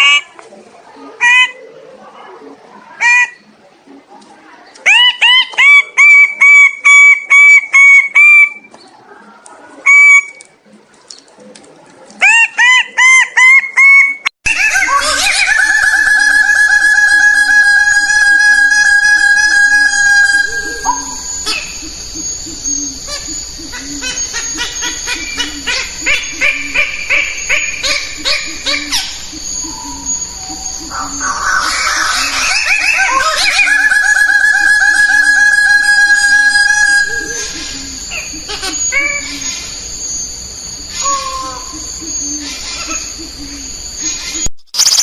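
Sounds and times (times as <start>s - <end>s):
bird calling ringing notes: 14.5s - 44.2s
bird sharp chirps: 44.0s - 45.0s.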